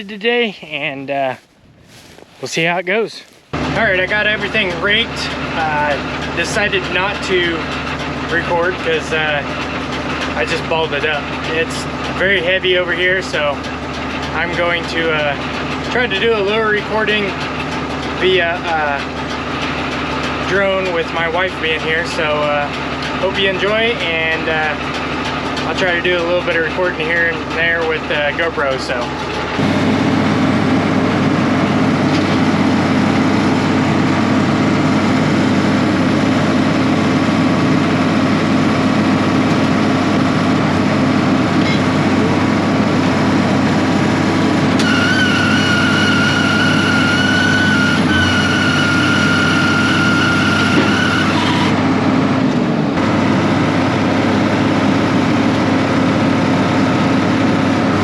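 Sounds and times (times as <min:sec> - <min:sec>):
high steady whine: 0:00.0 - 0:07.6, 0:25.8 - 0:58.0
tractor engine running under load: 0:00.0 - 0:58.0.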